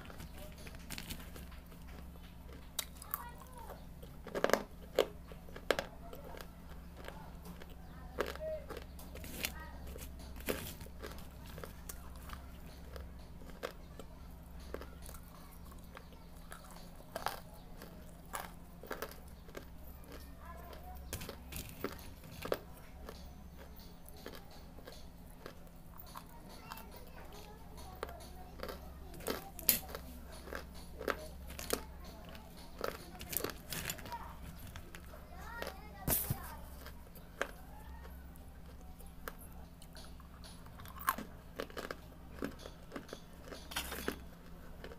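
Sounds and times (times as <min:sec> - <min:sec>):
person chewing dry clay crunches: 0:00.0 - 0:44.9
steady low hum: 0:00.0 - 0:44.9.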